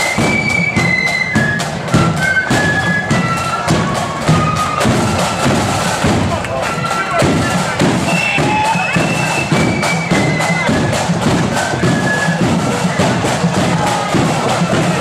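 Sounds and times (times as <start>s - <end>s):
flute melody: 0.0s - 15.0s
snare drumming: 0.0s - 15.0s
bass drum beats: 3.1s - 15.0s.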